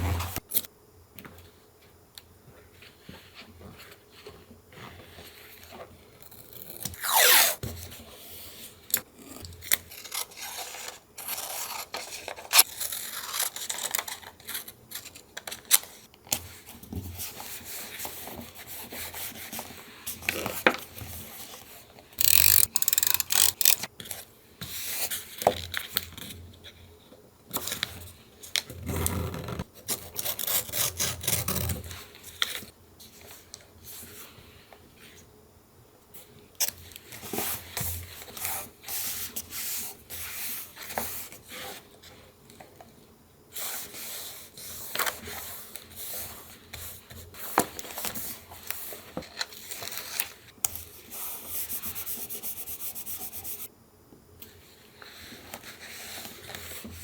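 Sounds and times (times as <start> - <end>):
paper rubbed and rustled: 51.1 - 53.7.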